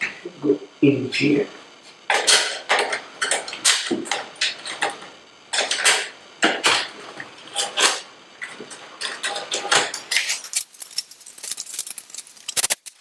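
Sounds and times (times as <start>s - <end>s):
metal parts clicking and scraping: 8.7s - 13.0s.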